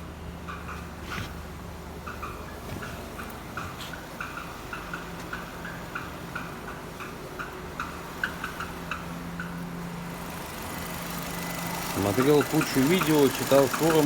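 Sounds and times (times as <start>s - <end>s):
car engine idling: 8.3s - 14.0s
light uneven clicking from gearbox: 9.5s - 14.0s.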